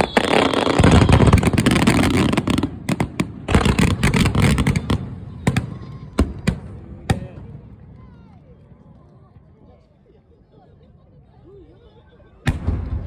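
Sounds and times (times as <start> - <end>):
fireworks crackling pops: 0.0 - 7.3
fireworks burst: 0.0 - 7.4.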